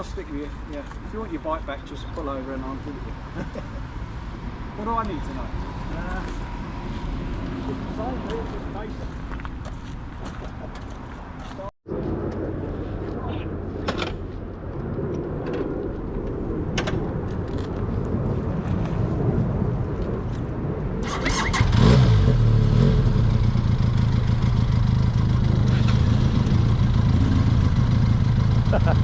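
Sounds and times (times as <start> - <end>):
low rumble: 11.9 - 21.0
motorcycle engine starting and idling: 21.0 - 29.0.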